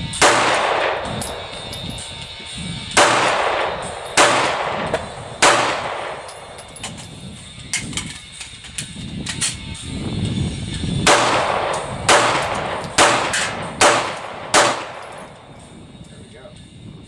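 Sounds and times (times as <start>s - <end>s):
gunshots with echo: 0.1s - 2.1s, 2.9s - 6.6s, 11.0s - 15.4s.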